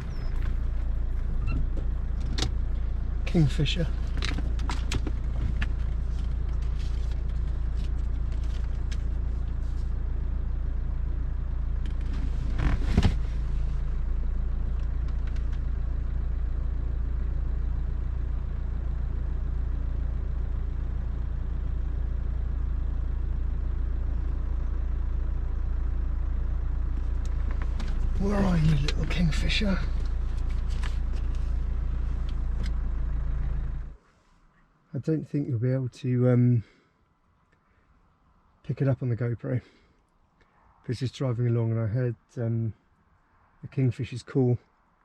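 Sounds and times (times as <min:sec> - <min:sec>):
car engine idling: 0:00.0 - 0:44.1.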